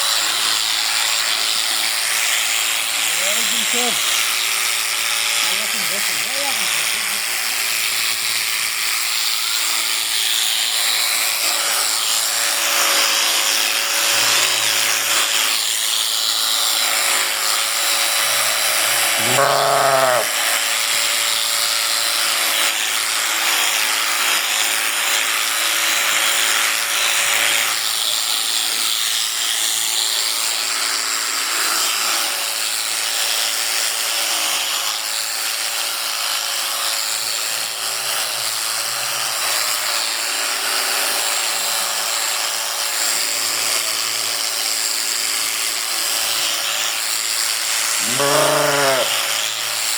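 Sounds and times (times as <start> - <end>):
electric clippers running: 0.0 - 49.9
sheep bleating: 19.0 - 20.4, 48.0 - 49.3.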